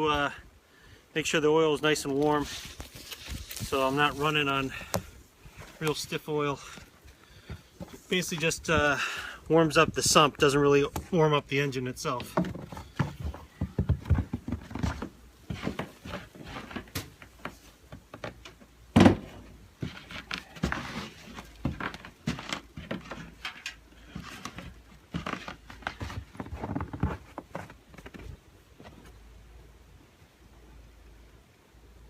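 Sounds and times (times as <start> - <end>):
objects being handled: 12.1 - 29.2
loud thump: 18.9 - 19.5.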